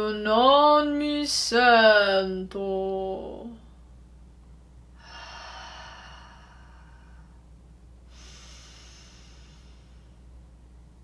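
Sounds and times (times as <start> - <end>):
person breathing in: 5.0 - 7.4, 8.1 - 10.2
person breathing out: 5.0 - 7.4, 8.1 - 10.2.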